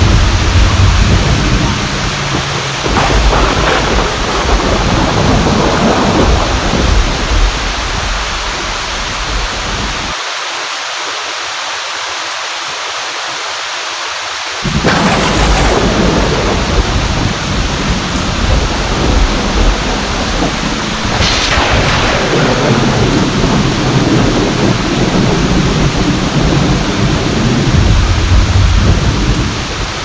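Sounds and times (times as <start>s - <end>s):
sharp thunderclap: 0.0s - 8.5s, 14.6s - 29.9s
thunder rumbling: 0.0s - 10.2s, 14.6s - 30.0s
heavy rain hissing: 0.0s - 30.0s.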